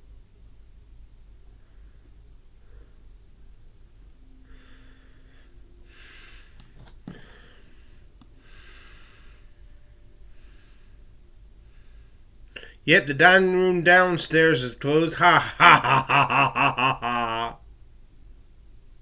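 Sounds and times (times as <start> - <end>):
person breathing: 1.5 - 3.2, 4.3 - 12.8.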